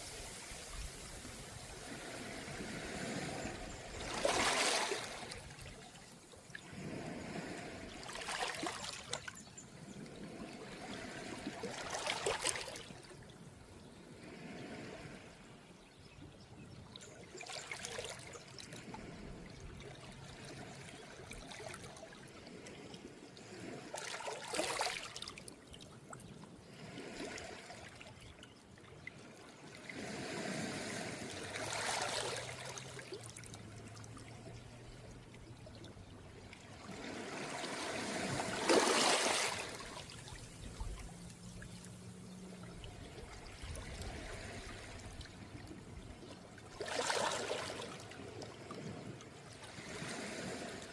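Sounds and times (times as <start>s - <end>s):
waves washing over pebbles: 0.0s - 9.2s, 29.9s - 34.0s, 36.6s - 42.2s, 46.7s - 48.3s, 49.2s - 50.9s.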